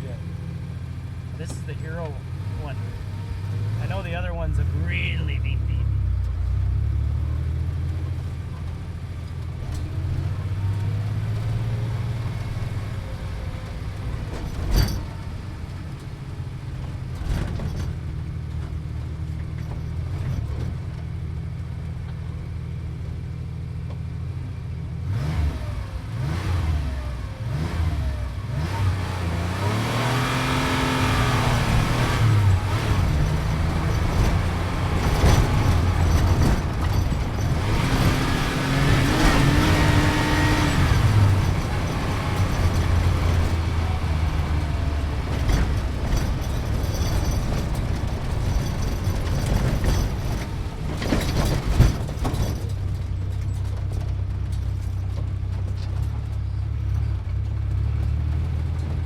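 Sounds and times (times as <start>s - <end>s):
car engine revving in cabin: 0.0s - 17.9s, 25.0s - 54.2s.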